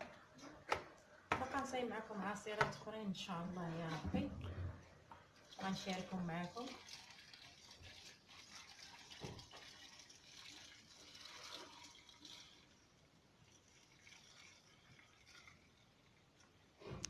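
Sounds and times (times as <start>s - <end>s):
liquid pouring: 5.2s - 16.8s.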